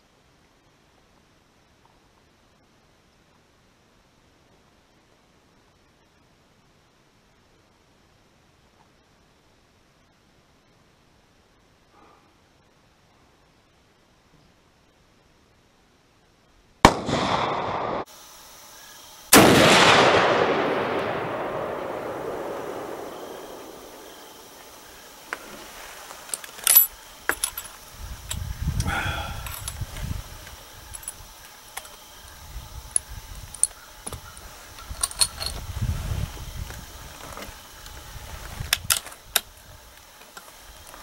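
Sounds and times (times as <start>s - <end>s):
rifle shot echo: 16.8s - 18.1s, 19.3s - 25.2s
metallic clicks and rattles: 26.3s - 28.4s, 34.8s - 35.6s.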